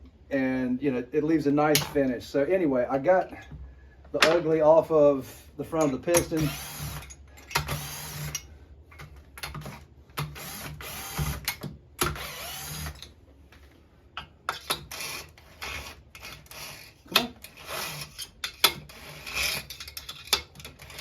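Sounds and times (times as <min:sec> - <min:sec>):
metal tools clicking and knocking: 0:17.1 - 0:21.0.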